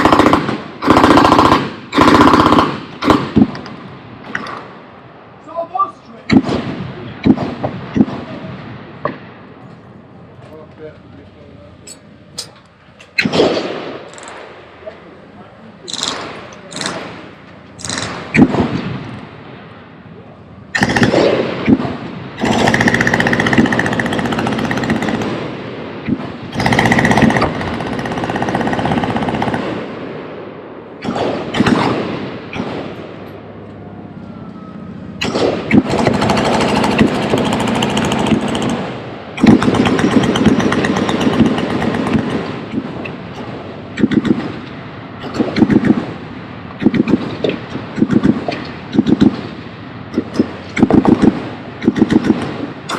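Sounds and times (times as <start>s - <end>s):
machine gun automatic fire: 0.0s - 3.7s, 15.9s - 19.0s, 20.7s - 29.8s, 31.0s - 33.0s, 35.2s - 43.0s, 44.0s - 44.6s, 45.2s - 46.1s, 46.8s - 49.5s, 50.2s - 52.9s.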